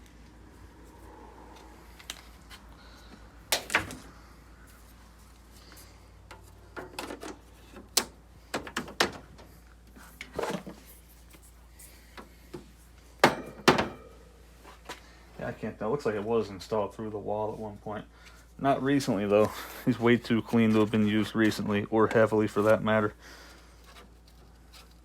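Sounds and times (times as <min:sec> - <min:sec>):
air conditioner being handled thumps: 0:06.7 - 0:09.6, 0:12.1 - 0:14.1.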